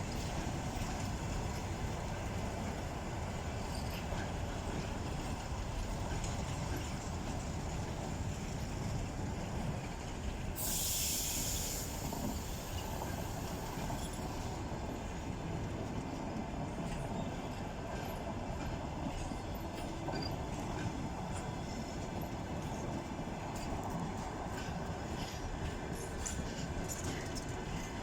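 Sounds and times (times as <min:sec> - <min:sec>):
train wheels rumbling on rails: 0:00.0 - 0:28.0
sharp hiss: 0:10.6 - 0:14.4.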